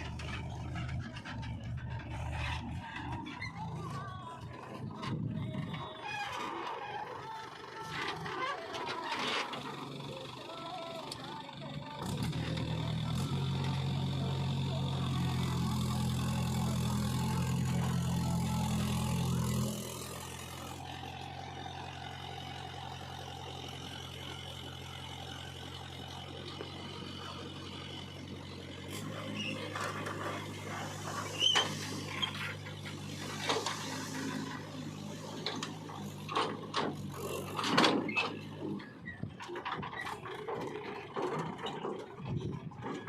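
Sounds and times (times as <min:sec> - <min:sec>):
heavy diesel engine running: 0:00.0 - 0:43.0.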